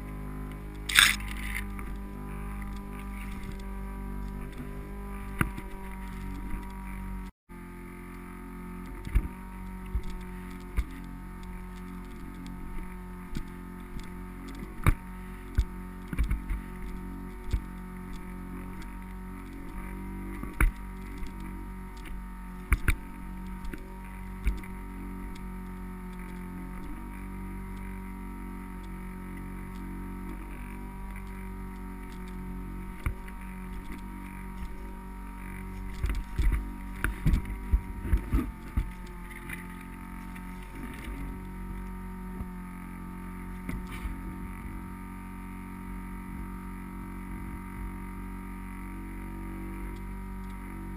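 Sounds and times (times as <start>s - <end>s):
muffled fan whirring hum: 0.0s - 50.9s
sharp clicks and knocks: 0.8s - 6.8s.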